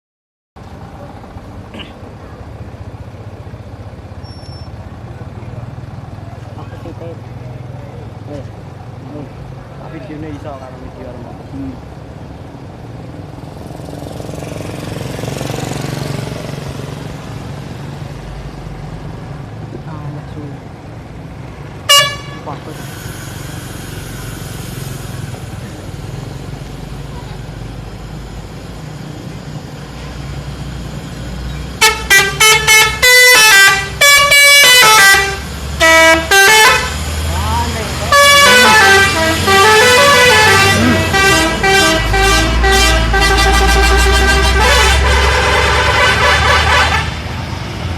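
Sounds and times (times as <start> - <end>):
bus engine running: 0.6 - 47.9
musical air horn playing a tune: 21.9 - 22.4, 31.8 - 37.0, 38.0 - 47.2.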